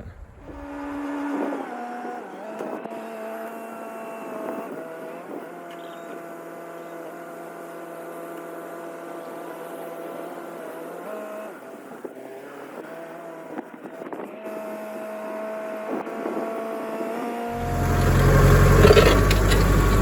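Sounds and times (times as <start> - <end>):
vehicle engine drone: 17.2 - 20.0.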